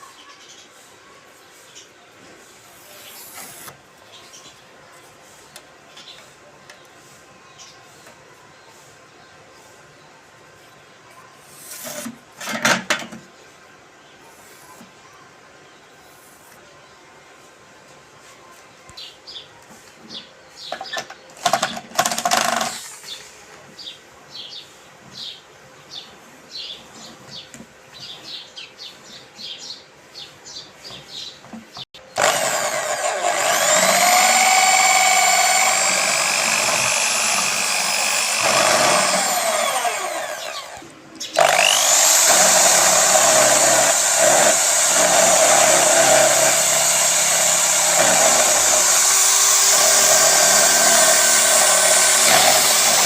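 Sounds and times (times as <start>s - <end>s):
electric drill motor whine: 3.1s - 3.8s, 32.2s - 40.8s, 41.4s - 53.0s.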